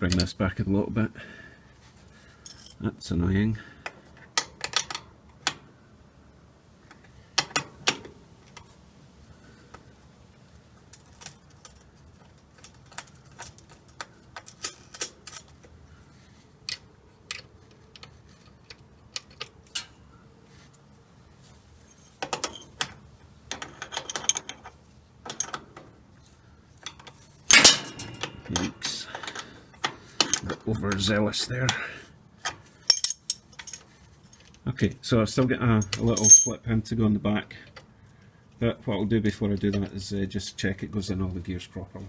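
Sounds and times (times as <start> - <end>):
metallic clicks and clinks: 26.8 - 31.1, 32.4 - 34.6, 35.8 - 36.6.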